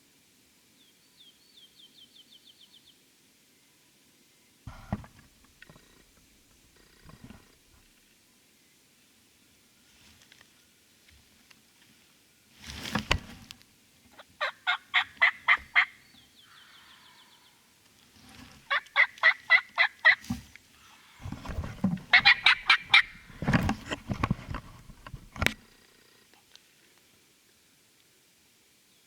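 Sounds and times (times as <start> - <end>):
turkey gobbling bursts: 14.2 - 16.0, 18.7 - 20.3, 22.0 - 23.5
turkey yelping: 14.2 - 16.0, 18.7 - 20.2, 22.1 - 23.4.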